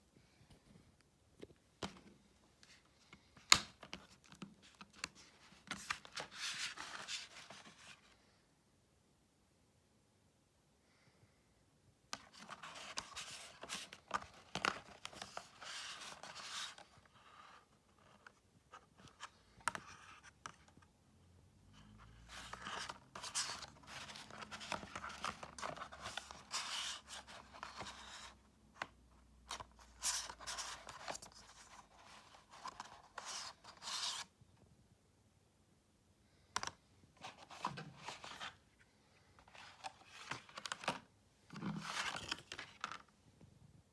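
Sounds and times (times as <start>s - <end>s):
packaging rustling and scraping: 22.1s - 28.4s, 29.5s - 34.3s, 37.2s - 38.6s, 39.4s - 43.0s.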